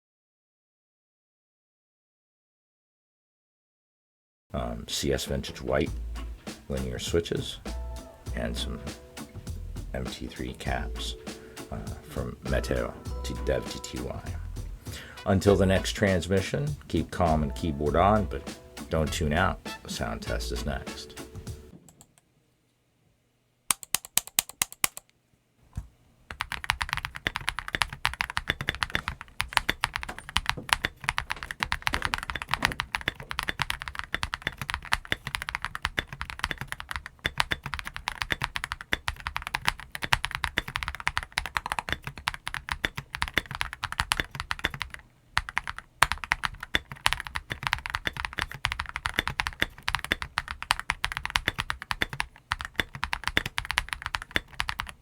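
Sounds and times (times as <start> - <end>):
typing on mechanical keyboard: 23.7 - 25.0, 26.3 - 55.0.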